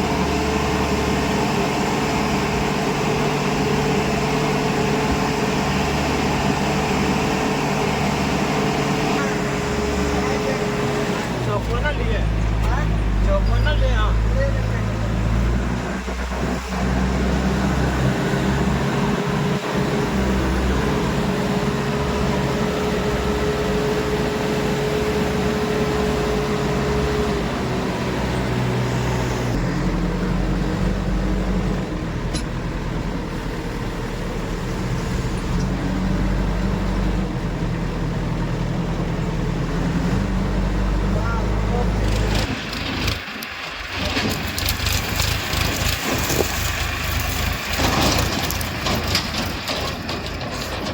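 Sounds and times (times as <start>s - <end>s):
heavy diesel engine running: 0.0s - 50.9s.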